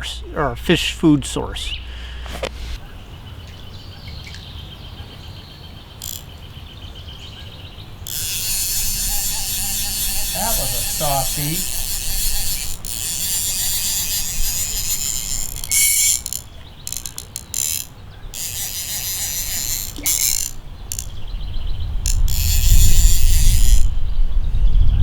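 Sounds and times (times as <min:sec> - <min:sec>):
fishing reel drag buzzing: 0:06.0 - 0:06.3, 0:08.0 - 0:21.3, 0:22.0 - 0:24.0.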